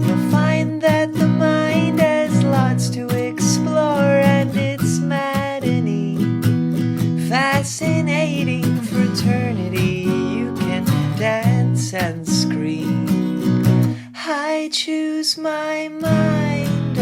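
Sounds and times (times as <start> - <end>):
strummed acoustic guitar chords: 0.0 - 14.6, 16.0 - 17.0.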